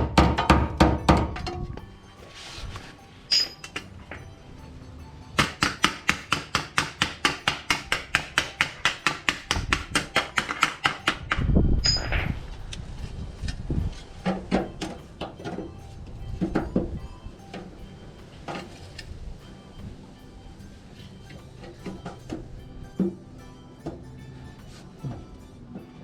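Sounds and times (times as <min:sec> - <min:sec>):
hammer beating steel sheet: 0:00.0 - 0:01.5, 0:05.4 - 0:12.0.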